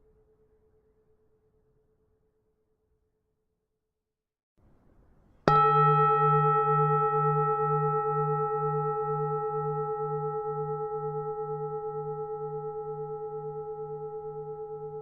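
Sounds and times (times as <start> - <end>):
temple bell ringing: 5.5 - 15.0.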